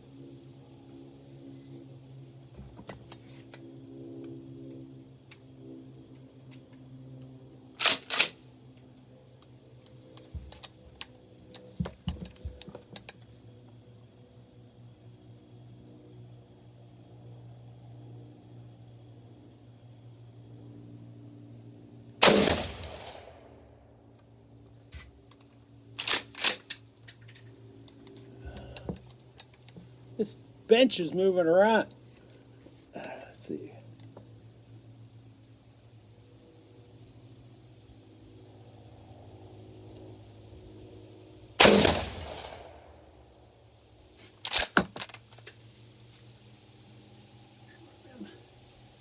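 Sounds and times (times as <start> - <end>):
shotgun shot: 22.2 - 23.6, 41.6 - 43.0.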